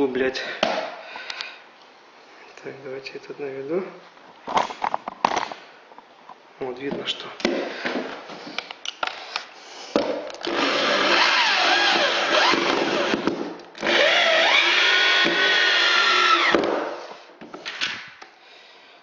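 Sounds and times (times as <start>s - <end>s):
electric drill driving screw into wood: 10.4s - 16.9s.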